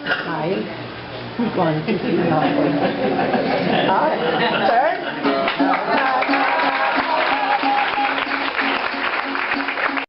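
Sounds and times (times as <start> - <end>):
audience clapping: 5.3 - 10.0.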